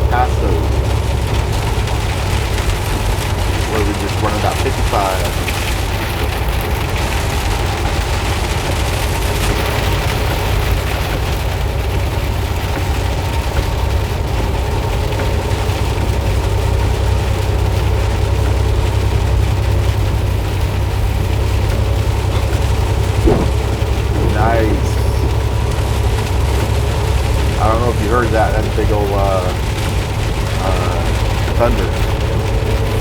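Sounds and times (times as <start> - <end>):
rain and spray hiss: 0.0 - 33.0
truck engine and road drone: 0.0 - 33.0.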